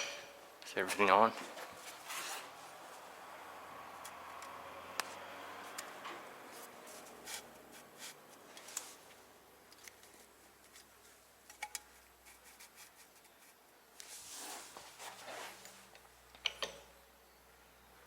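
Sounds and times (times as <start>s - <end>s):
rustling: 0.8s - 3.1s, 11.8s - 16.0s.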